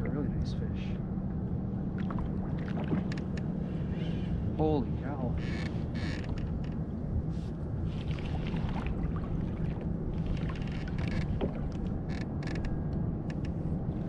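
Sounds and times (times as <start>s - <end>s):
wind rumble on microphone: 0.0s - 14.0s
water sloshing against kayak: 1.9s - 4.2s, 5.4s - 12.6s.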